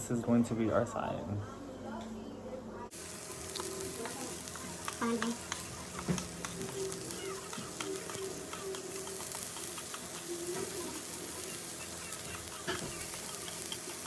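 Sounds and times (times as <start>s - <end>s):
crackles and pops of frying: 2.9s - 14.0s
garlic and onion sizzling in butter: 2.9s - 14.0s.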